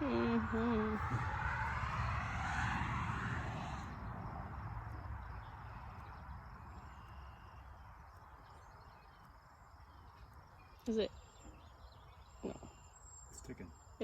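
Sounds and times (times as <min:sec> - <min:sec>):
crickets chirping: 0:00.0 - 0:14.0
low rushing noise: 0:00.3 - 0:06.7.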